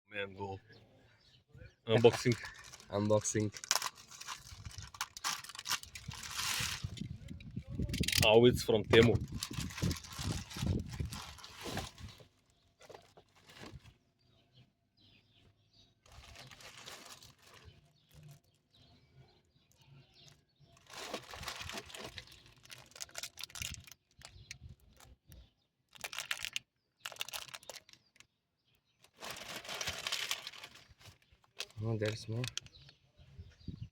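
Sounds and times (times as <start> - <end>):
plastic and cardboard tearing: 2.0 - 7.1, 9.0 - 12.2, 20.8 - 24.0, 29.1 - 31.8.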